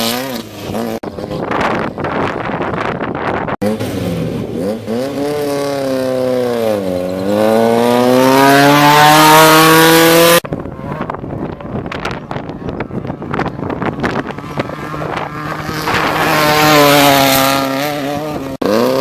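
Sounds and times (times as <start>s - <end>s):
race vehicle engine revving: 3.5s - 11.2s, 11.8s - 19.0s.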